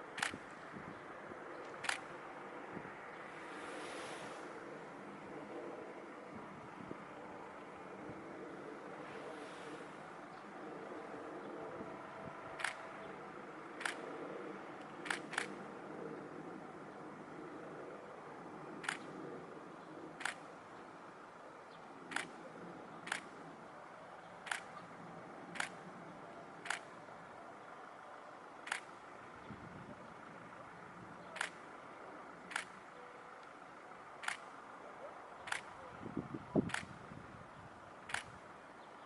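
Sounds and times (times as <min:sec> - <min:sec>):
camera shutter clicking: 0:01.8 - 0:02.1, 0:12.6 - 0:12.9, 0:13.8 - 0:14.0, 0:15.0 - 0:15.6, 0:18.8 - 0:19.1, 0:20.2 - 0:20.4, 0:22.1 - 0:22.3, 0:26.6 - 0:26.9, 0:28.7 - 0:28.9, 0:32.5 - 0:32.8, 0:35.5 - 0:35.7, 0:36.6 - 0:37.0.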